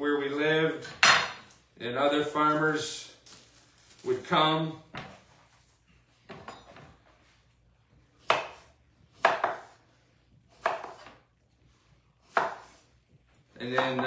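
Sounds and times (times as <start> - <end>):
knife chopping cucumbers: 8.2 - 9.8, 10.5 - 11.2, 12.2 - 12.9, 13.6 - 14.0.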